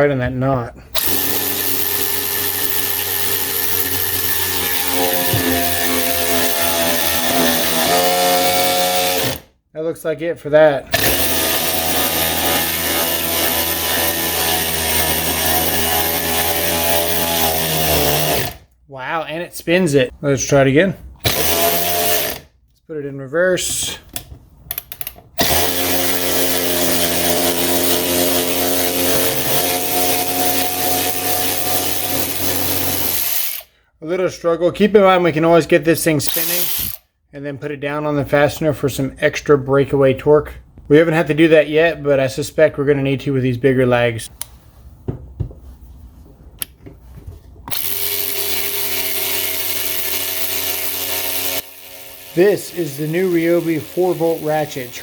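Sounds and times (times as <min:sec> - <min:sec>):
electric ratchet running: 0:01.0 - 0:09.5, 0:10.9 - 0:18.6, 0:21.2 - 0:22.5, 0:24.7 - 0:33.7, 0:36.3 - 0:37.0, 0:47.7 - 0:55.0.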